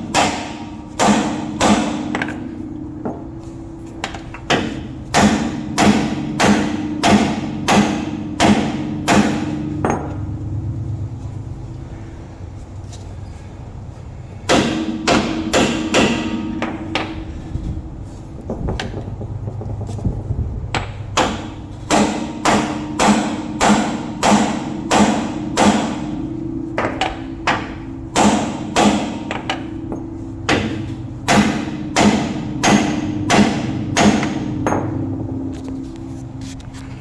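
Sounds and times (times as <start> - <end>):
hammer striking steel: 0.0 - 10.5, 14.5 - 17.3, 20.7 - 35.4.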